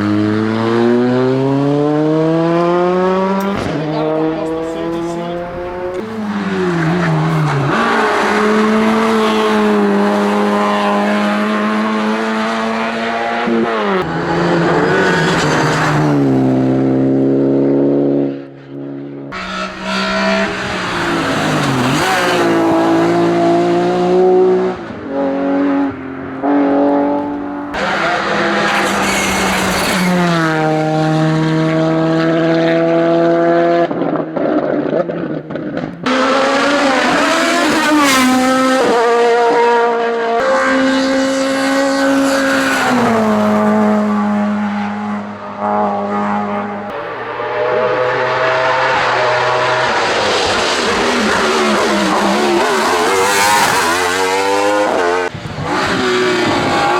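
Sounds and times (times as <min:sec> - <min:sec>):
racing car engines revving: 0:00.0 - 0:56.9.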